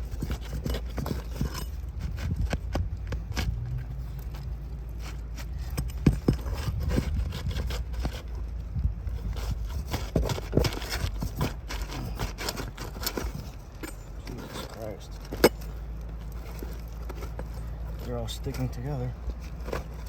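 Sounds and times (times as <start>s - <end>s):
shingles being pried and torn: 0.0s - 20.0s
low rumble: 1.7s - 9.9s.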